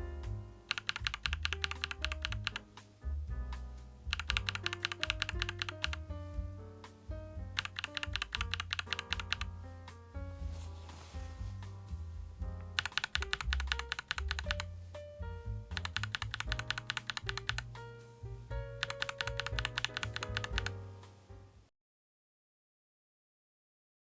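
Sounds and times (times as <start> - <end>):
background music with bass: 0.0 - 21.6
fast mechanical keyboard typing: 0.7 - 2.7, 4.1 - 6.1, 7.6 - 9.5, 12.7 - 14.7, 15.8 - 17.8, 18.8 - 20.8.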